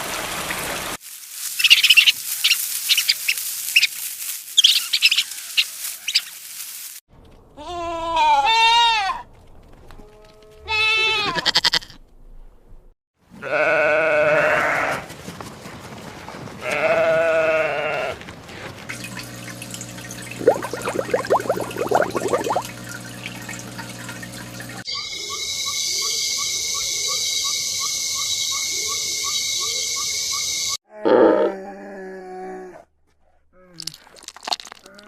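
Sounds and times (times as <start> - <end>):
sheep or goat bleating: 7.6 - 9.2, 10.2 - 12.0, 13.4 - 15.1, 16.6 - 18.2.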